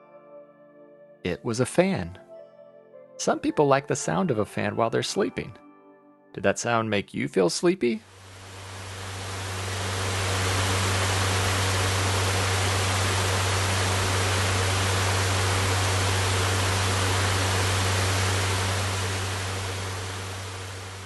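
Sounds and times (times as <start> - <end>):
electric fan running: 8.1 - 21.0.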